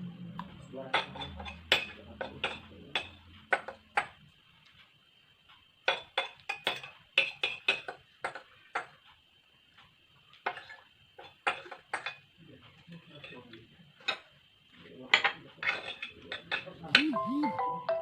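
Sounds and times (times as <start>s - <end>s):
utensils clinking against a dish: 0.9s - 4.2s, 5.8s - 8.9s, 10.4s - 12.3s, 13.1s - 14.4s, 15.1s - 16.9s.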